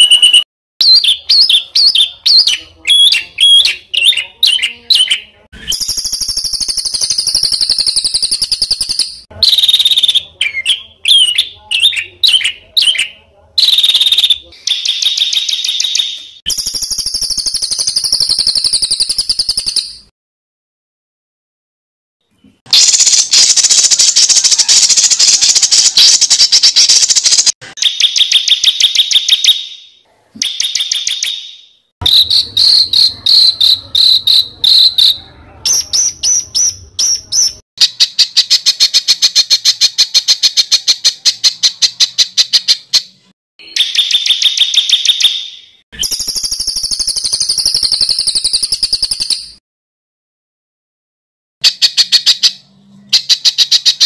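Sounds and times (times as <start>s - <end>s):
wavering bird whistles: 0.0s - 10.2s, 43.6s - 49.6s
bird trill: 0.0s - 20.1s, 22.3s - 49.6s
songbirds harsh repeated notes: 0.0s - 20.1s, 22.2s - 49.6s, 51.6s - 54.0s.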